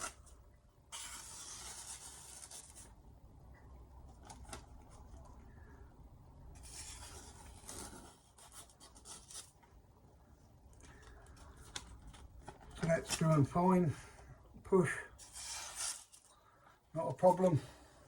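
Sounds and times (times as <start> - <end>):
knife slicing paper: 0.0 - 0.3, 0.9 - 3.0, 6.6 - 9.6, 15.2 - 16.3
paper rustling: 0.9 - 3.0, 6.5 - 9.8, 10.7 - 14.0.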